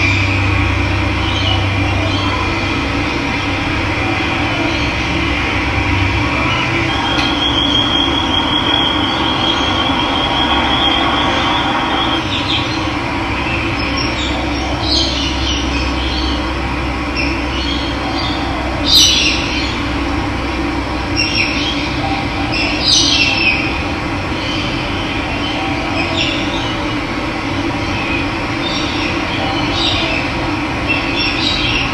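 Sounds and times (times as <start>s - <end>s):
bird calls: 6.3s - 12.8s
thin high whistle tone: 6.9s - 12.3s.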